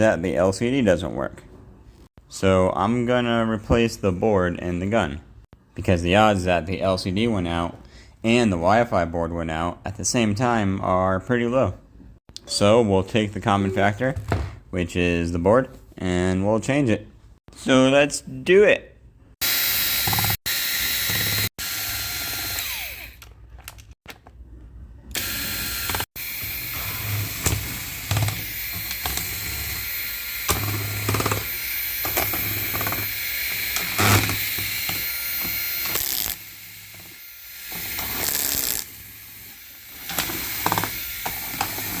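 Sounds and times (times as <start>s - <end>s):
small power drill running: 19.4s - 23.3s, 25.1s - 42.0s
clicks and knocks from handling parts: 23.2s - 24.4s.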